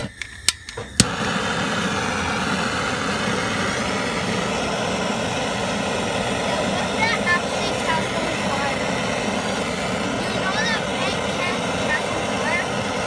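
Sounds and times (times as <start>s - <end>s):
torch flame hissing: 0.0s - 13.0s.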